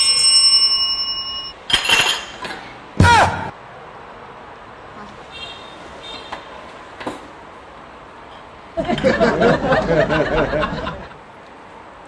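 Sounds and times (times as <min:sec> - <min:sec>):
person laughing: 0:08.8 - 0:11.1.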